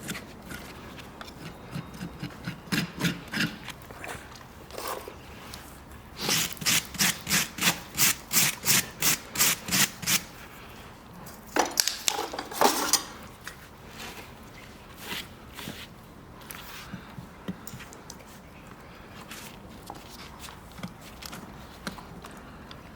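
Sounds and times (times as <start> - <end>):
rasp filing hoof: 0.0 - 3.7.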